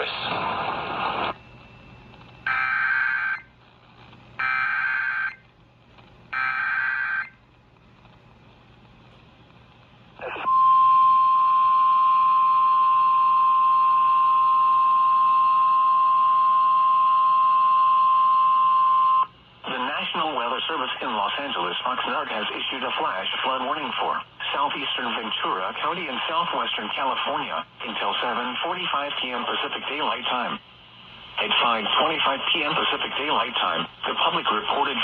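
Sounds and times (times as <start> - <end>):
steady warning alarm tone: 1.4 - 3.5, 4.4 - 5.4, 6.3 - 7.4, 10.3 - 19.3.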